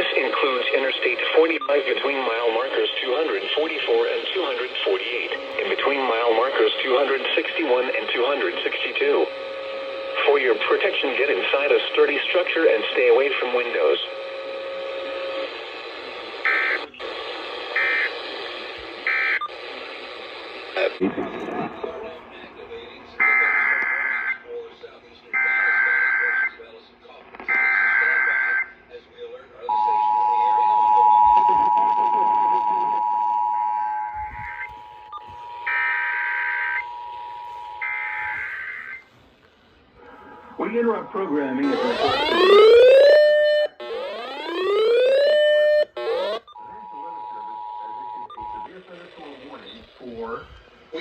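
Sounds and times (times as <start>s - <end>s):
radio static: 0.0s - 29.6s, 31.2s - 33.2s, 33.9s - 51.0s
digital data bursts: 16.3s - 17.1s, 17.7s - 20.0s, 41.6s - 50.3s
digital data tone bursts: 17.8s - 18.2s, 41.6s - 43.2s
two-tone attention signal: 41.6s - 44.8s.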